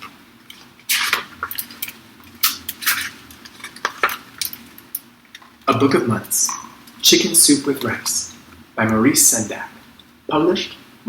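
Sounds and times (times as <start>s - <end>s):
book pages rustling: 0.0s - 4.8s.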